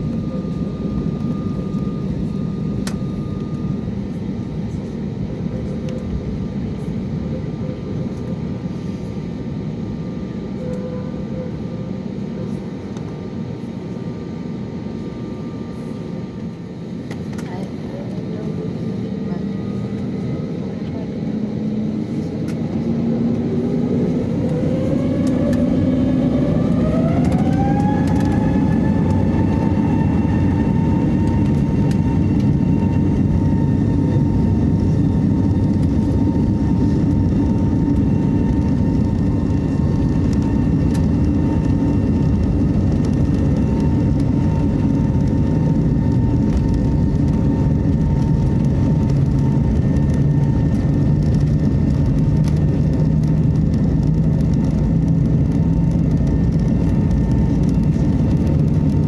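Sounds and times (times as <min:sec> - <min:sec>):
jet engine whine: 0:00.0 - 0:59.0
takeoff roll rumble: 0:18.1 - 0:59.0.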